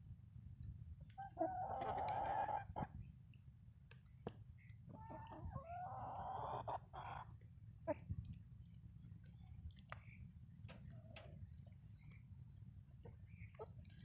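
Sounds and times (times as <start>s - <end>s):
chickens calling: 1.2s - 2.9s, 4.9s - 7.3s.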